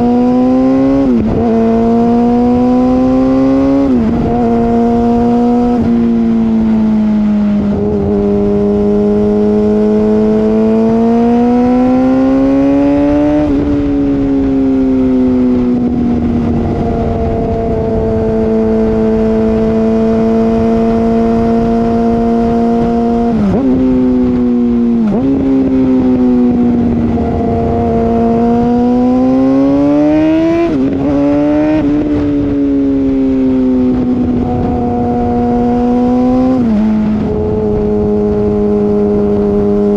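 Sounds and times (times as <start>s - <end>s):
motorcycle engine exhaust: 12.7s - 39.9s.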